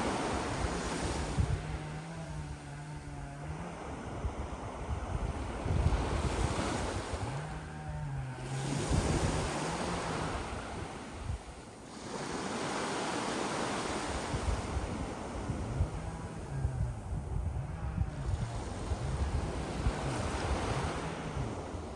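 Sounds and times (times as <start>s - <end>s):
waves washing up pebbly beach: 0.0s - 1.4s
wind buffeting microphone: 0.0s - 21.9s.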